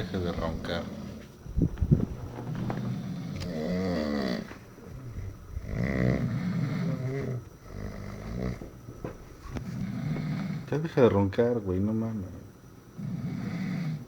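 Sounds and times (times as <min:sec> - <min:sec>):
person snoring: 0:02.7 - 0:08.6.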